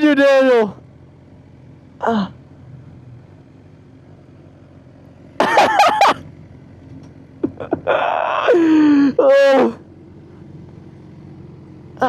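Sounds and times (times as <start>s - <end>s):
faint steady hum: 4.0s - 6.2s
person coughing: 5.4s - 6.2s.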